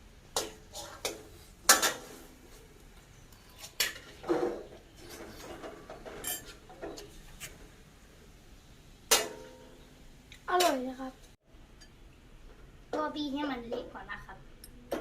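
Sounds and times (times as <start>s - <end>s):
utensils clinking against pots: 3.6s - 7.1s.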